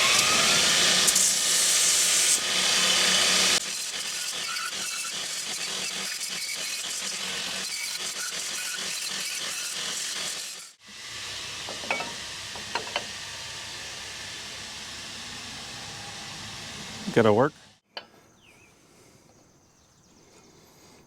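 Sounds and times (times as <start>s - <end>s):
power tool crackling hiss: 0.0s - 6.9s, 8.0s - 17.8s.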